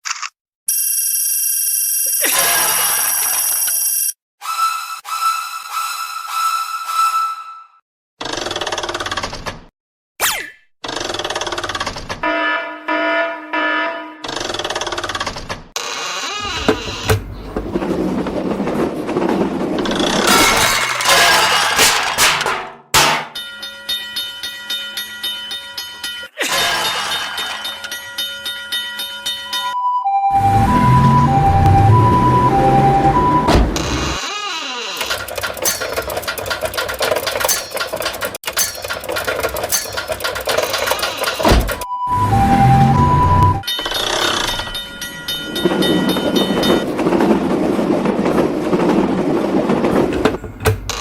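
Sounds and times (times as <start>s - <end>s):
railroad crossing bell ringing: 23.4s - 26.4s, 27.6s - 29.8s, 43.7s - 46.9s
train passing: 44.7s - 50.6s.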